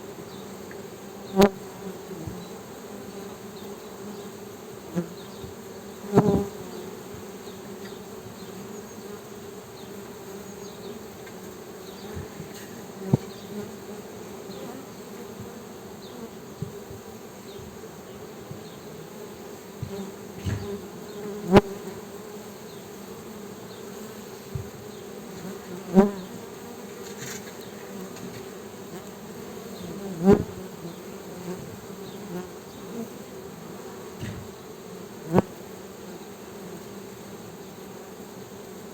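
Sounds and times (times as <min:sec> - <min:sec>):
honey bees buzzing: 0:00.0 - 0:38.9.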